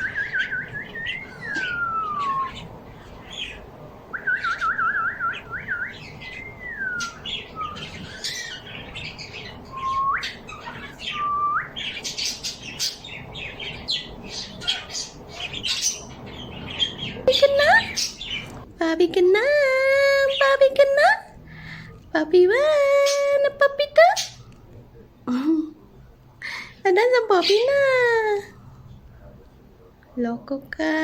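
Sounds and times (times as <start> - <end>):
pet birds whistling trills: 0.0 - 18.6.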